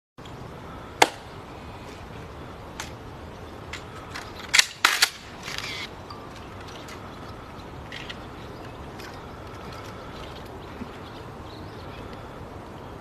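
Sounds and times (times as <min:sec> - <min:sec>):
rifle metallic clacks: 0:03.7 - 0:05.7.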